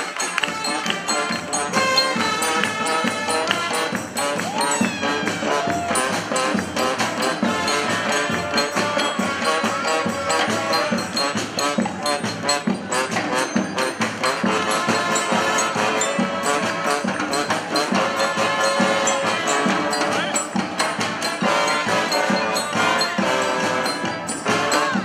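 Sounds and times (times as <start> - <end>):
brass band playing: 0.0 - 25.0.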